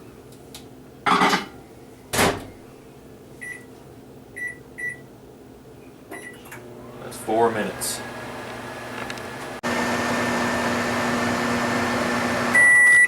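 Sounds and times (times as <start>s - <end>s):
short keypad beeps: 12.6s - 13.0s.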